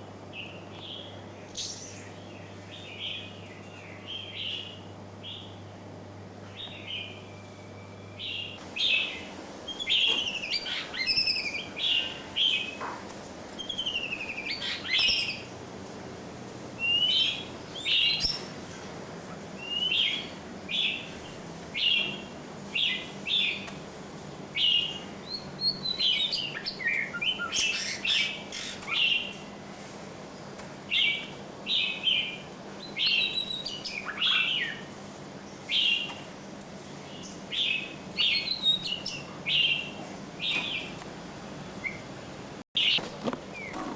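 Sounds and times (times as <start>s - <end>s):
rising and falling bird calls: 6.5s - 12.8s, 13.5s - 15.5s, 16.8s - 18.5s, 30.9s - 34.9s.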